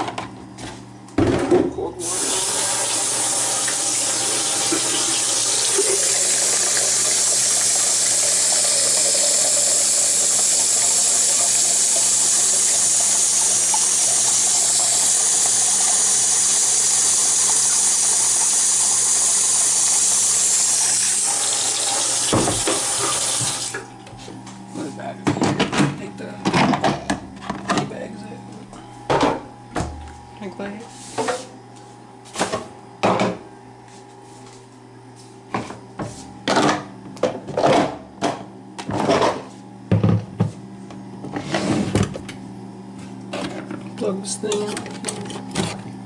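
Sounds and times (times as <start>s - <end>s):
water running from a tap: 2.0s - 23.8s.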